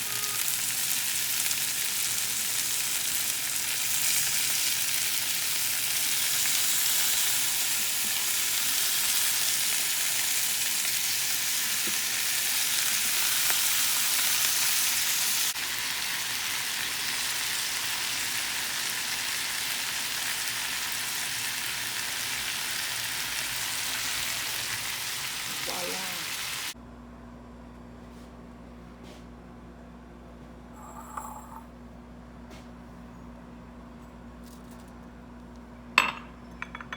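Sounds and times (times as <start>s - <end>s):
food sizzling in a pan: 0.0s - 26.8s.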